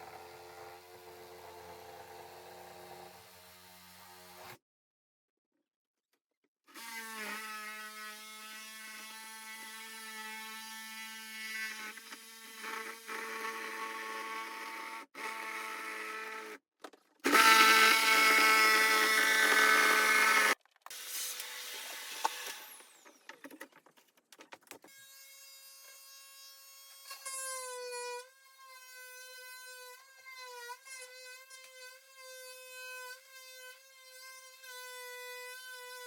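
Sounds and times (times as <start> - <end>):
electric power drill whine: 17.3 - 23.3.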